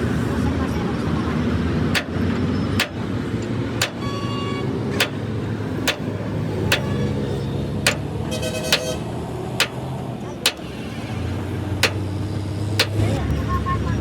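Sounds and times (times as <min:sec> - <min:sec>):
engine running: 0:00.0 - 0:14.0
metal on metal strikes: 0:02.0 - 0:02.2, 0:02.8 - 0:03.1, 0:03.8 - 0:04.2, 0:05.0 - 0:07.2, 0:07.8 - 0:08.1, 0:09.6 - 0:09.8, 0:10.4 - 0:10.7, 0:11.8 - 0:12.0, 0:12.8 - 0:13.0.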